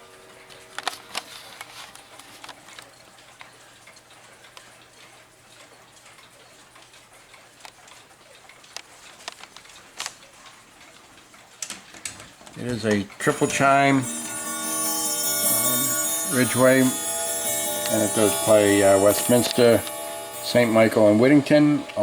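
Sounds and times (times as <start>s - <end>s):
clock ticking: 13.2s - 22.0s.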